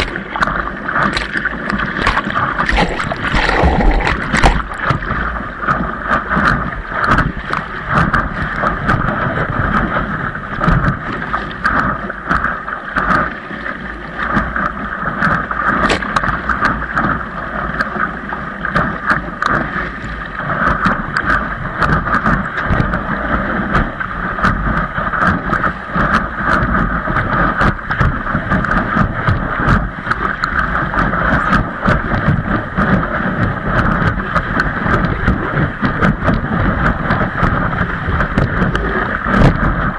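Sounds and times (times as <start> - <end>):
wind buffeting microphone: 0.0 - 13.3, 18.6 - 39.9
windsurf board rushing through water: 0.0 - 39.9.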